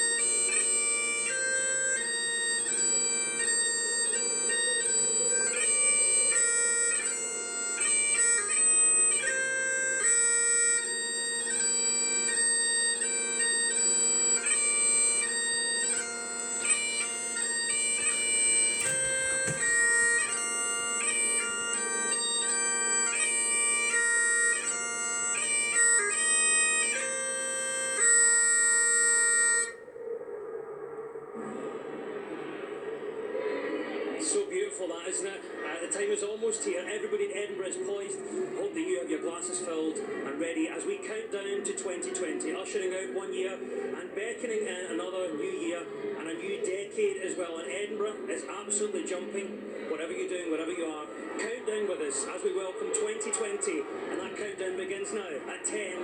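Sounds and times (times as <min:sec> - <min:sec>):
bagpipes playing a tune: 0:00.0 - 0:29.8.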